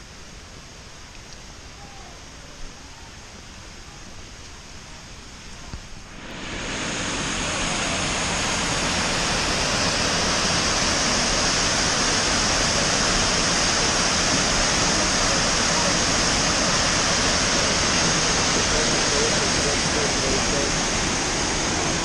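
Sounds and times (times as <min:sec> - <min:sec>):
waterfall rushing: 0:05.2 - 0:22.0.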